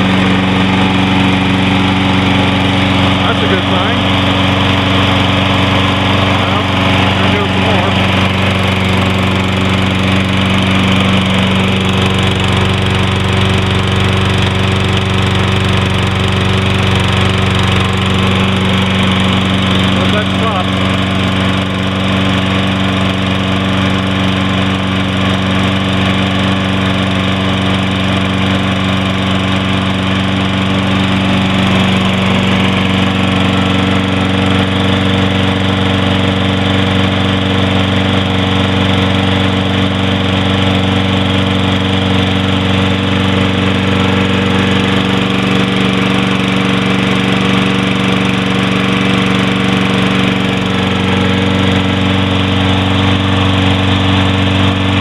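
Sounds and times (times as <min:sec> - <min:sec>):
lawn mower engine running: 0:00.0 - 0:55.0.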